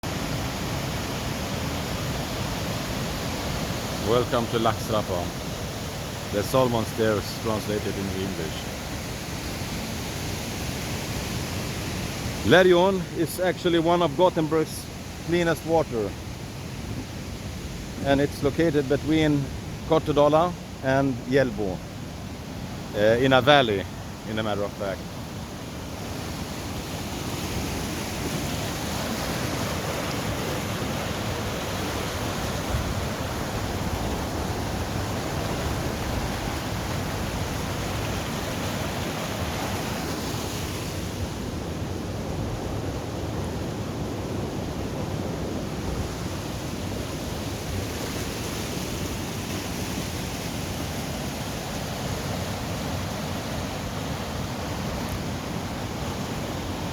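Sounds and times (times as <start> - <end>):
water rushing: 0.0 - 56.9.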